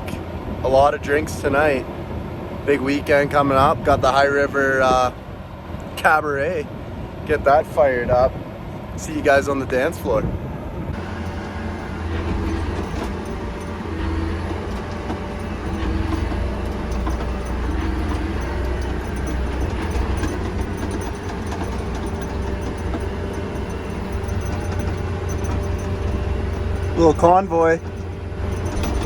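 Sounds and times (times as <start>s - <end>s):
faint engine whine: 0.0s - 29.0s
heavy vehicle engine drone: 10.4s - 29.0s.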